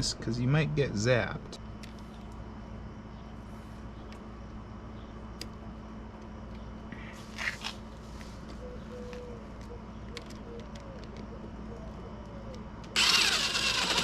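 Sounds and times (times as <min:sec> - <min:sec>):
low background rumble: 0:00.0 - 0:14.0.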